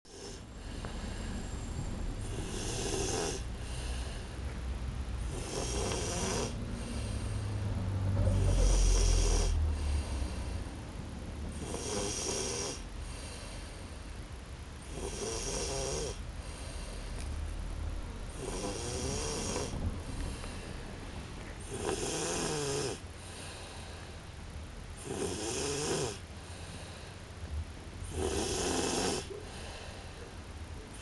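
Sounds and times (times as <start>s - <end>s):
person snoring: 0.1s - 1.2s, 2.2s - 4.2s, 5.3s - 7.3s, 8.2s - 10.6s, 11.6s - 13.4s, 14.9s - 16.2s, 18.3s - 20.6s, 21.6s - 23.7s, 25.0s - 26.2s, 28.1s - 29.7s.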